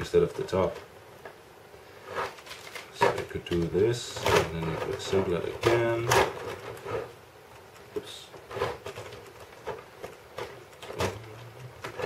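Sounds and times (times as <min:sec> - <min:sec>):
plastic parts clicking and knocking: 0:02.2 - 0:12.0.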